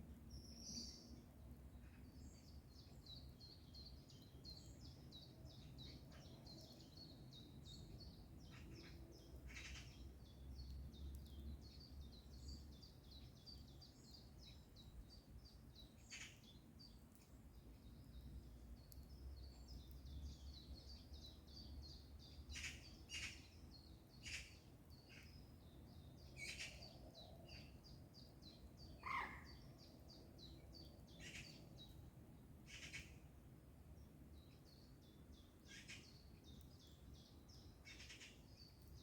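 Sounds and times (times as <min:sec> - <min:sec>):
songbirds singing: 0:00.0 - 0:39.0
harsh bird calls: 0:29.0 - 0:29.7.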